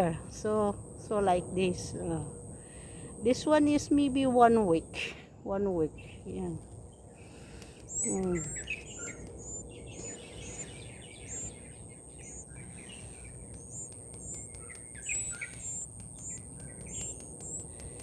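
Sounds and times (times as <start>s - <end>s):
young birds chirping: 5.9s - 18.0s
steady high-pitched tone: 7.9s - 18.0s.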